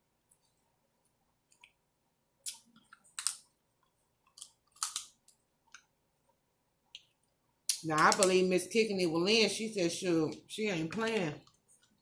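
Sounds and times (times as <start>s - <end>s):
scissors cutting crab shells: 4.4s - 5.1s.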